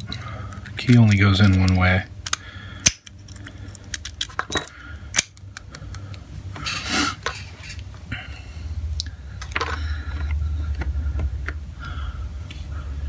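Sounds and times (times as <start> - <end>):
padlock metal clicks: 0.0 - 6.2.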